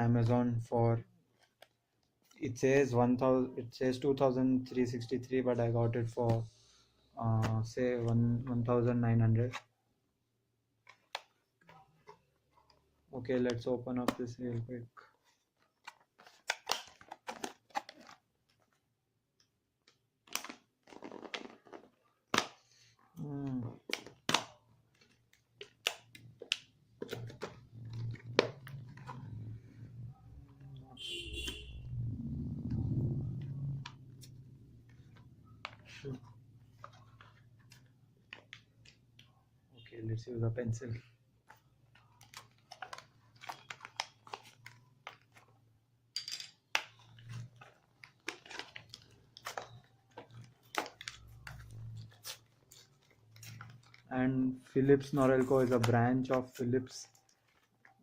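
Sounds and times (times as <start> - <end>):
packaging crackling and crinkling: 19.9 - 30.8, 41.5 - 45.7, 46.7 - 58.0.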